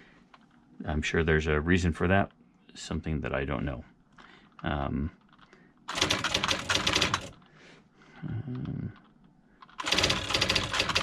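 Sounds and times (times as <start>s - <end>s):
typewriter typing: 5.9s - 7.4s, 9.7s - 11.0s.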